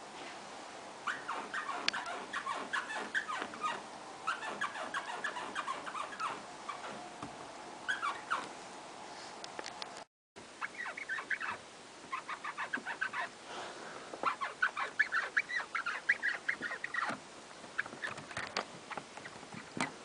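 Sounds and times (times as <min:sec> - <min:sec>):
sunroof squeaking: 0:01.0 - 0:07.2, 0:10.6 - 0:13.3, 0:14.2 - 0:20.0.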